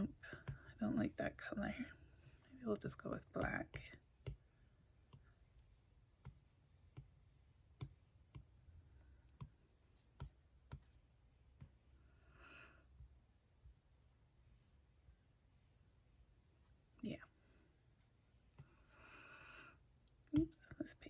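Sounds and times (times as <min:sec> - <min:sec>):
stylus tapping on tablet screen: 0:00.3 - 0:00.7, 0:03.2 - 0:11.9
soft breath: 0:11.9 - 0:13.1, 0:17.3 - 0:19.9.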